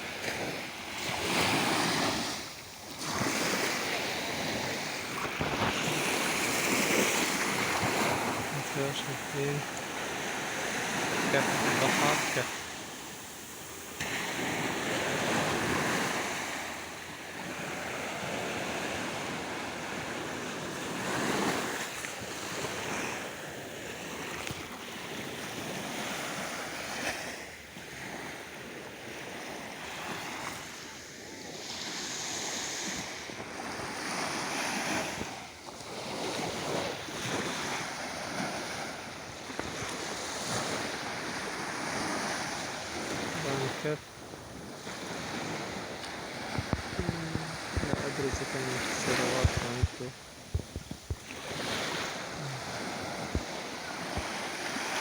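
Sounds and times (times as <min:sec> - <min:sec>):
sea waves washing in: 0:00.0 - 0:55.0
wind buffeting microphone: 0:44.2 - 0:54.4.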